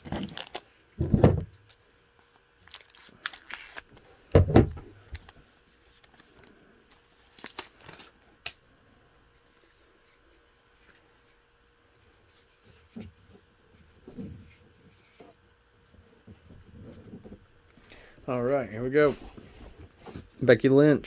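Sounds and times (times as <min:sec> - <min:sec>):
wrapper tearing and crinkling: 0:00.0 - 0:00.7, 0:02.6 - 0:04.1, 0:07.2 - 0:08.1.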